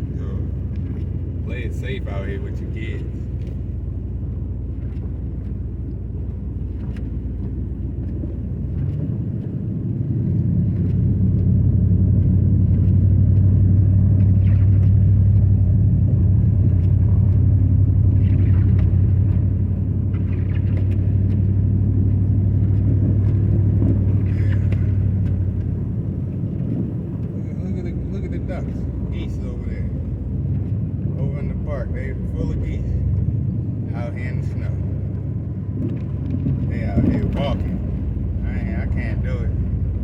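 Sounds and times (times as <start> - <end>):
car engine and road noise: 0.0 - 40.0.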